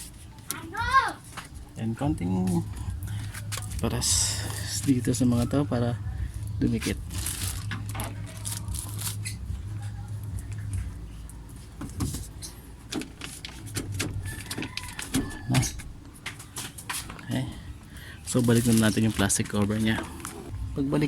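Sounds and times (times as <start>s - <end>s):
steady low hum: 1.3s - 21.0s
plastic sheeting rustling: 6.8s - 9.8s, 18.3s - 20.5s.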